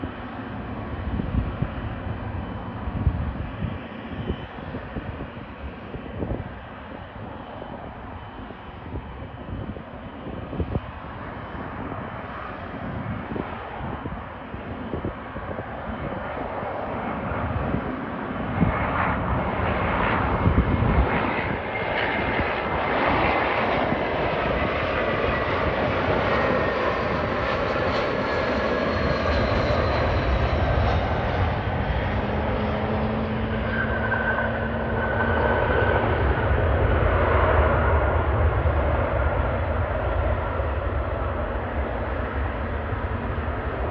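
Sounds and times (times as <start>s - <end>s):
jet airliner flying past: 0.0s - 43.9s
whining tones gliding in pitch: 26.4s - 37.1s.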